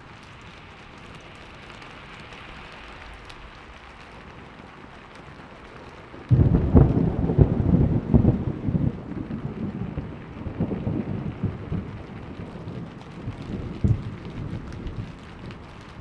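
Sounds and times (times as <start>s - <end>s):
steady rain: 0.0s - 16.0s
thunder rumbling: 4.8s - 16.0s
sharp thunder crack: 6.3s - 15.0s.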